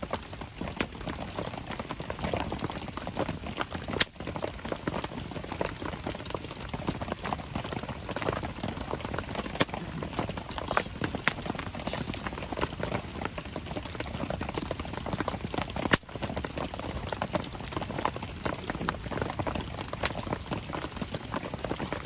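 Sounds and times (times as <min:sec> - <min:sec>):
campfire crackling: 0:00.0 - 0:22.0
raindrops pattering: 0:00.0 - 0:22.0.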